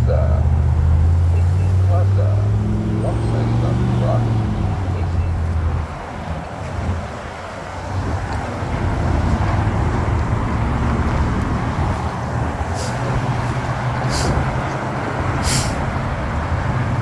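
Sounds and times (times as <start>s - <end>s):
road traffic: 0.0s - 17.0s
short high hisses: 14.1s - 14.4s, 15.4s - 15.8s.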